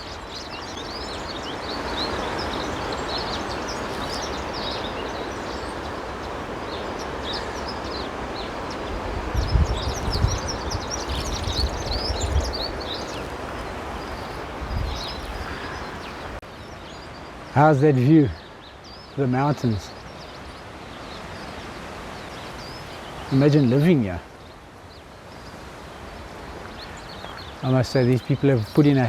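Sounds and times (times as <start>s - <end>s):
wind buffeting microphone: 0.0s - 16.4s
small birds chirping: 0.0s - 29.0s.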